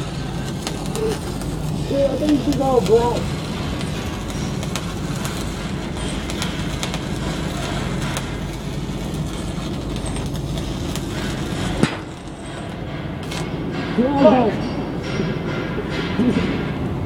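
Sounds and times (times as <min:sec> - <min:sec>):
low hum: 0:00.0 - 0:17.0
welding arc crackling: 0:00.0 - 0:17.0.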